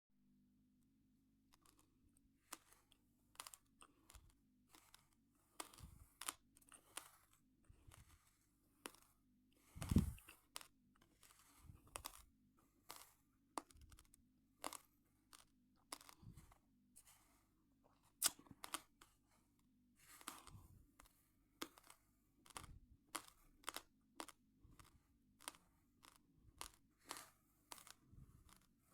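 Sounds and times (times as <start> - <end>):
raw rice crunching in mouth: 9.8 - 10.4, 18.2 - 18.8.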